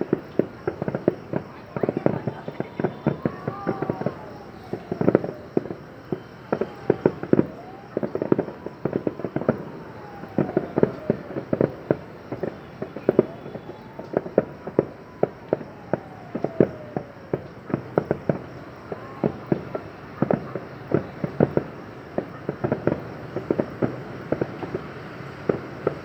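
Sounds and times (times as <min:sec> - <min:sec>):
fireworks bangs and cracks: 0:00.0 - 0:26.0.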